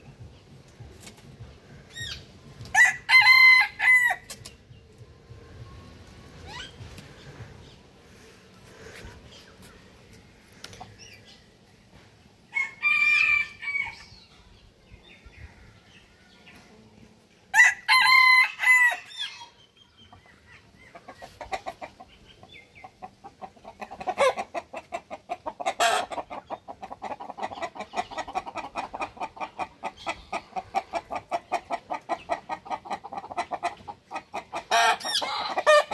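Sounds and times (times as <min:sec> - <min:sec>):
rooster crowing: 0:02.8 - 0:04.2, 0:12.5 - 0:14.0, 0:17.6 - 0:19.3.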